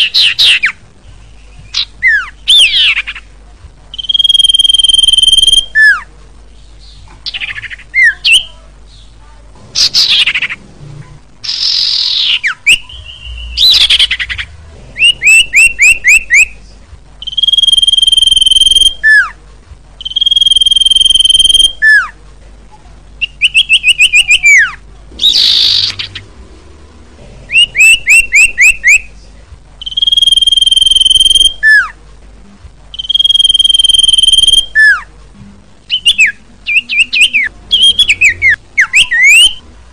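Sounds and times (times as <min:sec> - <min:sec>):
bird whistling song: 0:01.4 - 0:03.2, 0:03.9 - 0:06.1, 0:11.4 - 0:16.6, 0:17.2 - 0:19.4, 0:20.0 - 0:22.2, 0:23.2 - 0:26.2, 0:27.5 - 0:29.1, 0:29.8 - 0:32.0, 0:32.9 - 0:35.1, 0:35.9 - 0:39.6
bird harsh rasping notes: 0:23.2 - 0:26.4.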